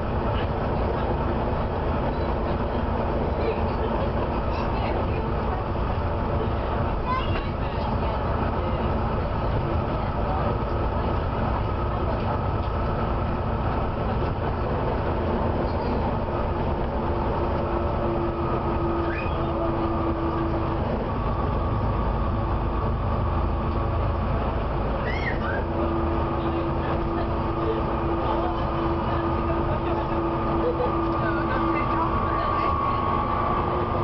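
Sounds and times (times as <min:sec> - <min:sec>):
bus engine and road rumble: 0:00.0 - 0:34.0
steady whining tones: 0:06.9 - 0:34.0
fan belt squealing: 0:18.7 - 0:20.2, 0:24.9 - 0:27.2, 0:30.2 - 0:34.0.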